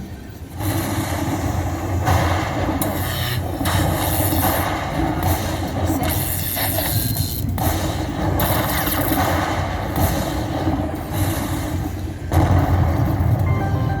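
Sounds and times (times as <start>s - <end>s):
slot machine spinning reels: 13.2s - 14.0s.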